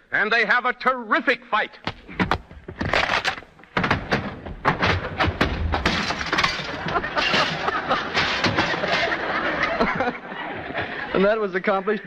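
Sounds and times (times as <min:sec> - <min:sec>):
chairs clattering: 0:01.9 - 0:11.0
wooden baskets splintering: 0:02.1 - 0:09.4
glass smashing: 0:04.8 - 0:09.2.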